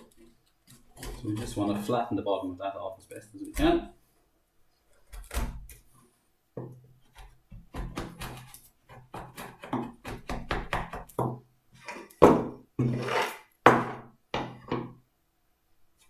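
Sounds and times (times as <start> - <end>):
chisel knocking into wood: 7.6 - 11.4, 12.2 - 12.6, 13.7 - 15.0.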